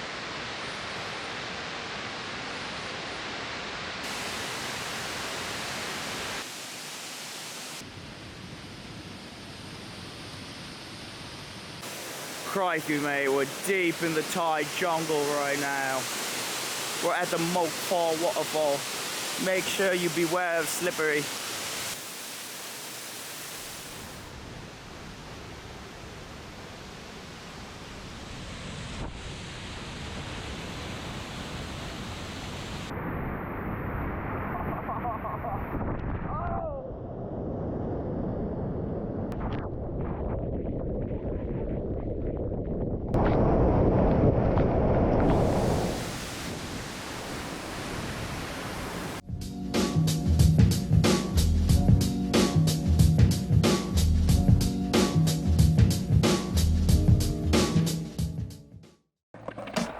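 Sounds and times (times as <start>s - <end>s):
waterfall rushing: 0.1s - 7.8s, 11.8s - 24.3s, 45.3s - 49.2s.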